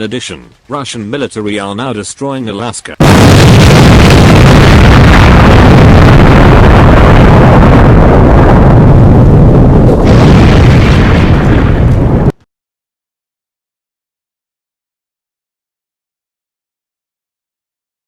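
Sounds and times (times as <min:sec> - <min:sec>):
distorted explosion rumble: 0:03.0 - 0:12.4.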